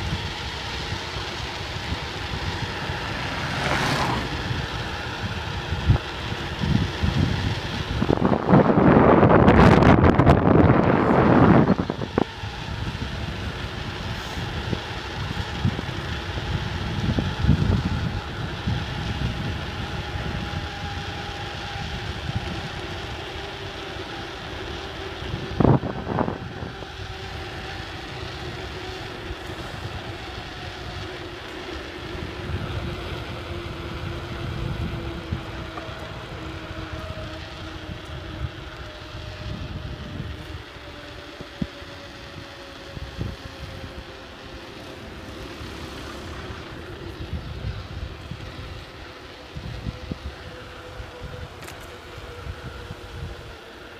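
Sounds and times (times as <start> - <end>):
bicycle rolling noise: 0.0 - 53.9
wind: 0.0 - 53.9.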